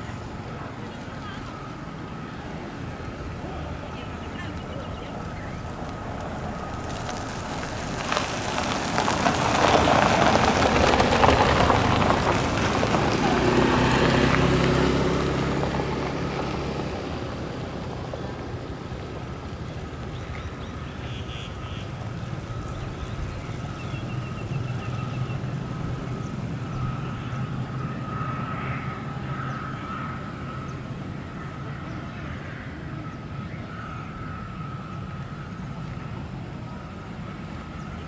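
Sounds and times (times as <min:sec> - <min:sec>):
jet engines rumbling with whine: 0:00.0 - 0:38.0.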